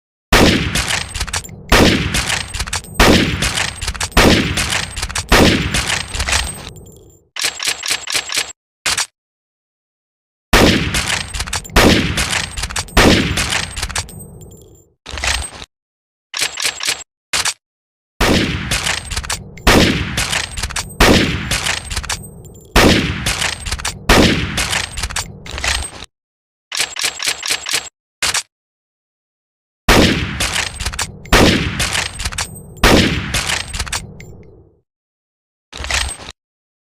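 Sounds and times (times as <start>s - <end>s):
rifle shots ringing: 0.4s - 6.8s, 10.6s - 14.2s, 18.2s - 22.0s, 22.7s - 25.0s, 29.9s - 33.9s
rifle bolt clicks: 30.4s - 34.5s.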